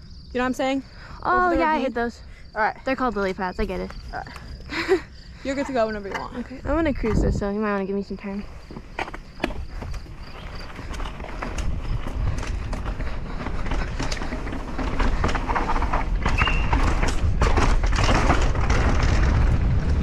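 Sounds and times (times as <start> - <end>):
bike clattering over rocks: 9.0 - 20.0
low rumble: 9.6 - 20.0.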